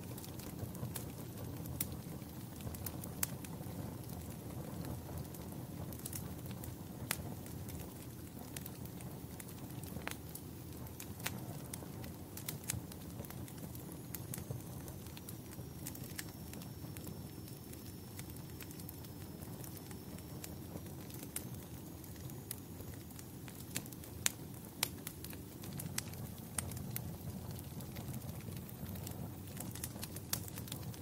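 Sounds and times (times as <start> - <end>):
fire crackles and pops: 0.0 - 31.0
fire flames rumbling: 0.0 - 31.0
faint high whistle: 14.2 - 20.5.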